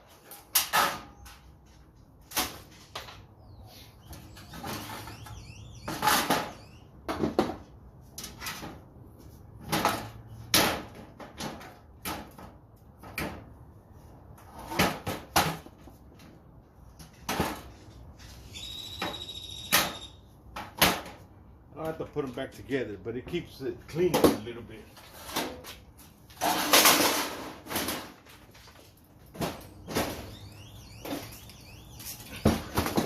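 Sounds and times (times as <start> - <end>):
short high-pitched squeal: 18.4 - 20.2.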